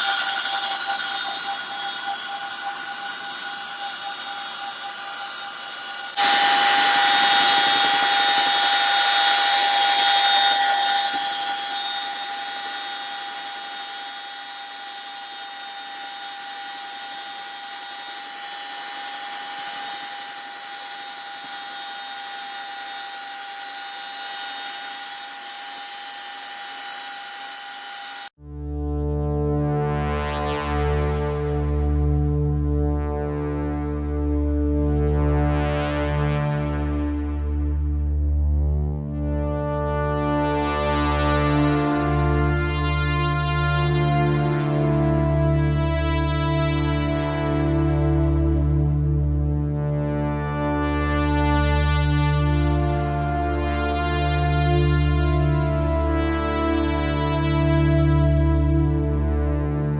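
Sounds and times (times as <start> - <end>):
helicopter turbine whine: 0.0 - 28.3.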